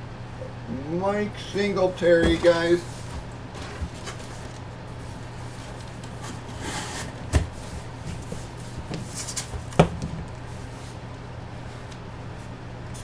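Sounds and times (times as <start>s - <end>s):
cards rustling: 1.1s - 9.8s.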